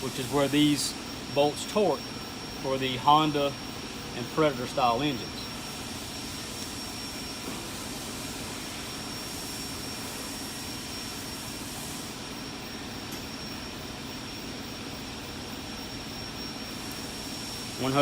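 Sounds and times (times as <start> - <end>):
high-pitched whine: 0.0 - 18.0
machine hum and hiss: 0.0 - 18.0.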